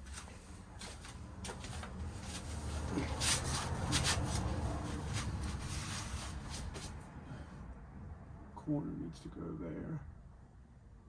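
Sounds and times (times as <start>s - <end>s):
rustling handling noises: 0.0s - 7.1s.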